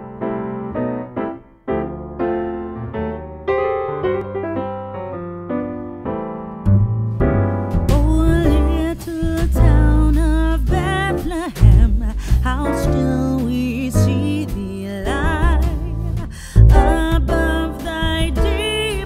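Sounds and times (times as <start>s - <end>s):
electric piano chords: 0.0s - 19.0s
heavy bass: 6.7s - 19.0s
person singing: 7.9s - 19.0s.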